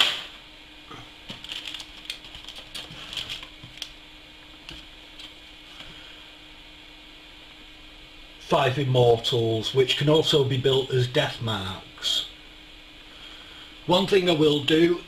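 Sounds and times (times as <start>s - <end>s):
plastic parts and packaging handled: 1.3s - 4.0s.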